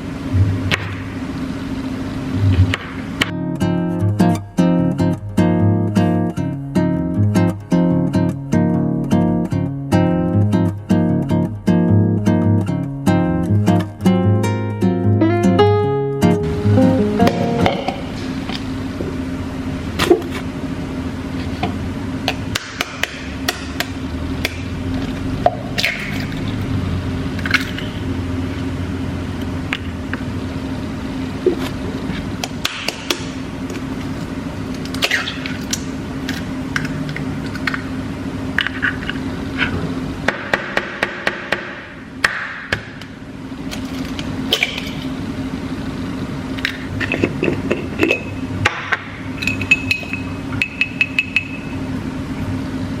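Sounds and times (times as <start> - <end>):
low hum: 0.0 - 2.8, 15.0 - 22.4
utensils and dishes clinking: 47.0 - 51.8.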